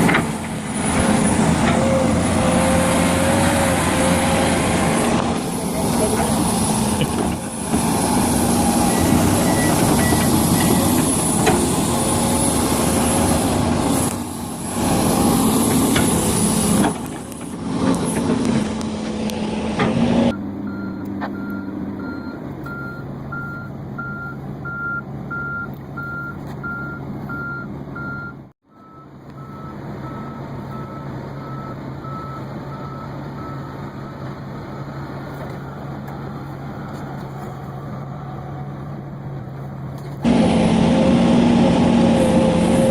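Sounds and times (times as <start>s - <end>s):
diesel machinery running: 0.0s - 42.9s
reversing alarm beeping: 8.8s - 10.9s, 20.3s - 34.3s.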